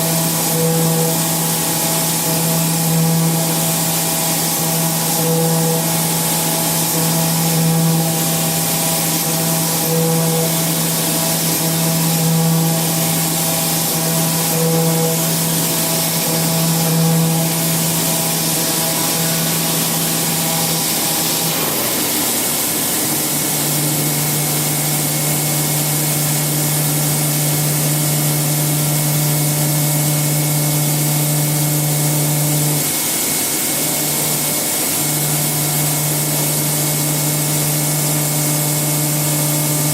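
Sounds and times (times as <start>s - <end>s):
milling cutter humming on metal: 0.0s - 39.9s.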